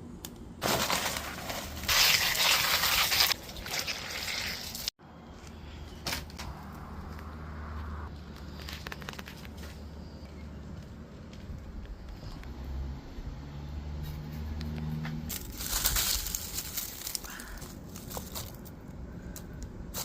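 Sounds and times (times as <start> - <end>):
crunching and scraping in soil: 0.6 - 12.6, 14.0 - 20.0.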